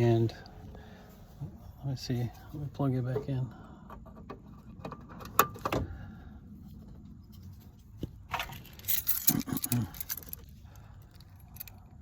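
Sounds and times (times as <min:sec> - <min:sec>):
keys jingling: 0:08.4 - 0:10.4.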